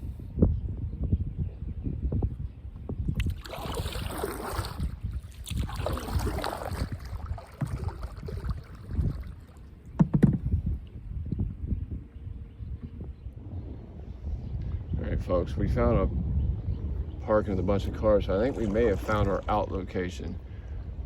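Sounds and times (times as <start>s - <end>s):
wind rumble on microphone: 0.0s - 21.0s
paddle strokes swishing through water: 3.2s - 10.4s, 18.4s - 19.7s
knocks: 10.0s - 10.5s.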